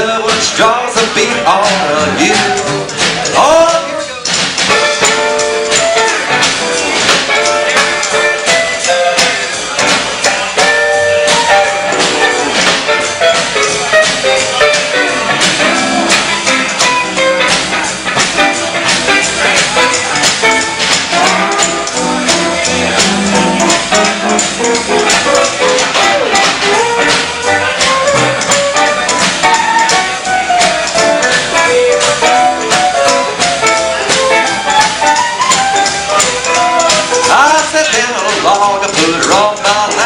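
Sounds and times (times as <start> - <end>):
drums: 0.0 - 40.0
electric and steel guitars: 0.0 - 40.0
upright bass: 0.0 - 40.0.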